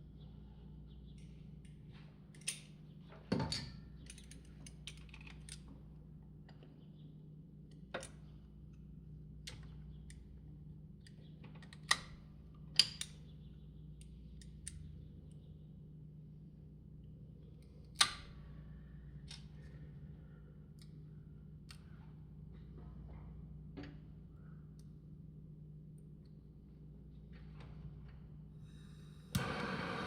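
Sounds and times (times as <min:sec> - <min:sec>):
faint steady hum: 0:00.0 - 0:30.0
tools and metal parts clicking: 0:03.5 - 0:05.7.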